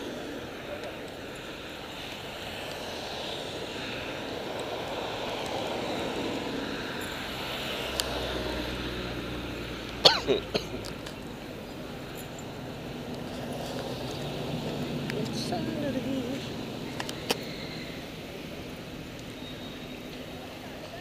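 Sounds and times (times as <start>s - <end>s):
crowd and street noise: 0.0s - 21.0s
low engine hum: 0.0s - 21.0s
cough-like burst: 10.0s - 10.8s.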